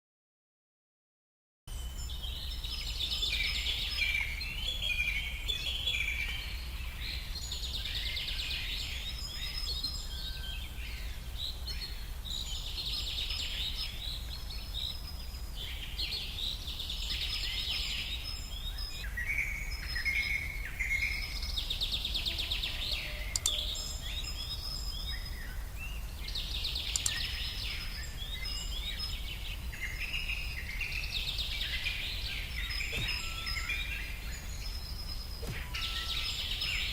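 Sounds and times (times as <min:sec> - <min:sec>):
birds singing and chirping: 0:01.7 - 0:36.9.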